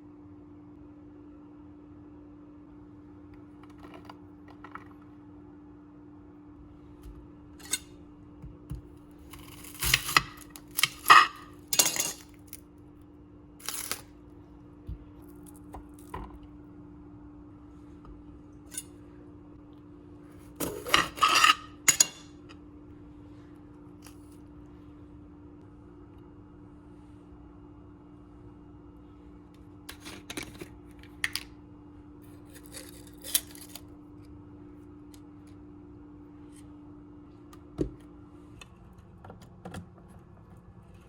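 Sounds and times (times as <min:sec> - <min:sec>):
kitchenware clinking and clattering: 0:09.6 - 0:12.4, 0:20.6 - 0:22.5.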